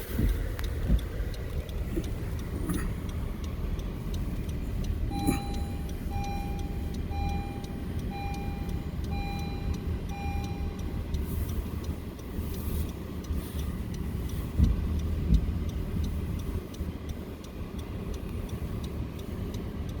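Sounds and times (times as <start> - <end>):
motor vehicle running: 0.0 - 20.0
electronic beep: 5.1 - 10.8.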